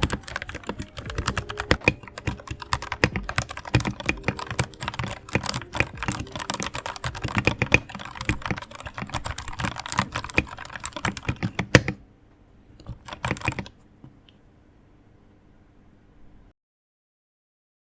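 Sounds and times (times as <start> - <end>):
mechanical keyboard key clacks: 0.0 - 12.0, 12.8 - 13.7.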